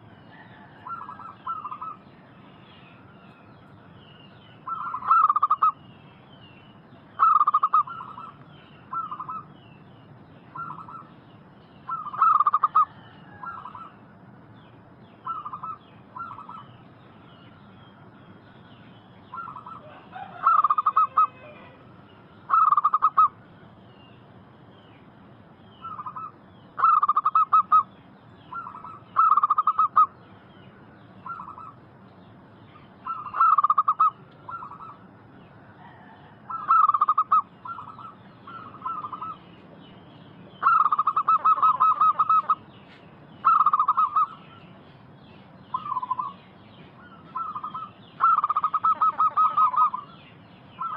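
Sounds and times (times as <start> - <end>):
doves cooing: 0.0 - 2.0, 4.6 - 5.8, 7.2 - 9.5, 11.9 - 14.1, 15.2 - 16.7, 19.3 - 23.4, 25.8 - 27.9, 28.5 - 30.2, 31.2 - 31.8, 33.0 - 39.6, 40.6 - 42.7, 43.4 - 44.6, 47.0 - 50.2.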